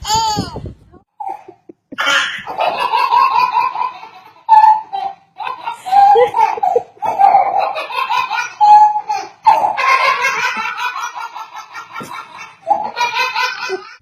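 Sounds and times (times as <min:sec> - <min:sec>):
young child giggling: 0:01.2 - 0:04.3, 0:05.5 - 0:08.5, 0:09.2 - 0:14.0.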